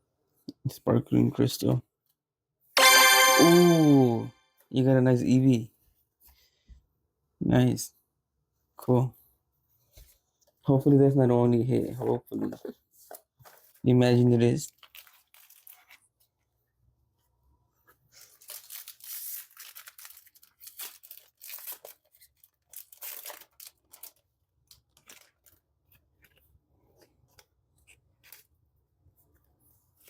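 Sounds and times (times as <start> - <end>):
foil pack tearing and crinkling: 14.8 - 16.0, 18.3 - 25.6.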